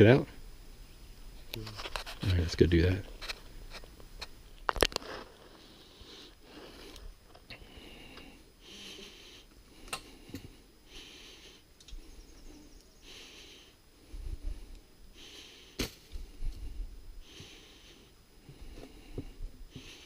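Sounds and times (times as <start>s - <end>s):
person breathing heavily: 5.1s - 20.0s.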